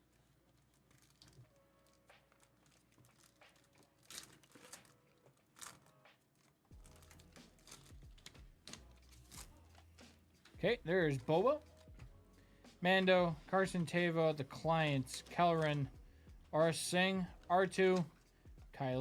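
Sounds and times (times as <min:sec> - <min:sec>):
packaging crinkling and tearing: 0:00.0 - 0:10.0
sharp packaging rips: 0:00.5 - 0:10.0.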